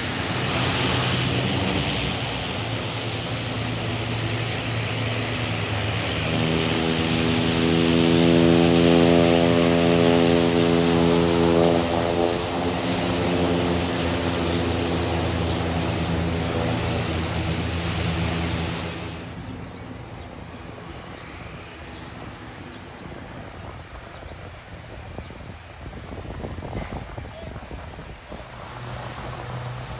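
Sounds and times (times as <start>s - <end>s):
engine rumble: 0.0s - 21.4s
turboprop engines hissing: 0.0s - 29.9s.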